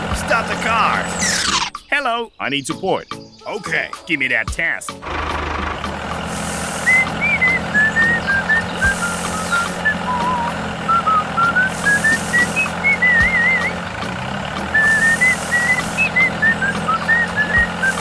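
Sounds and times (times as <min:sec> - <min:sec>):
low vehicle engine hum: 0:00.0 - 0:01.7, 0:05.0 - 0:18.0
whistled tune: 0:06.6 - 0:13.9, 0:14.6 - 0:18.0.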